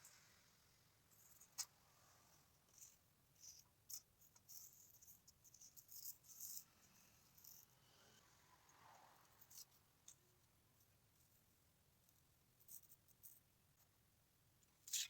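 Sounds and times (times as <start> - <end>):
faint high-pitched scratching: 0.0 - 13.9.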